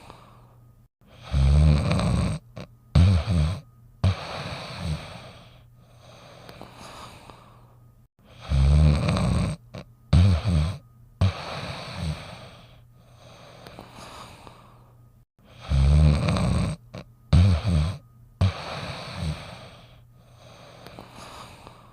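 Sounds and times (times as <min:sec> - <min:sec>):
dog snoring: 0:01.1 - 0:07.5, 0:08.2 - 0:14.6, 0:15.4 - 0:21.9
dog snorting: 0:01.2 - 0:05.5, 0:08.3 - 0:12.5, 0:15.5 - 0:19.9
breathy exhale: 0:04.0 - 0:08.6, 0:11.2 - 0:15.8, 0:17.8 - 0:21.9.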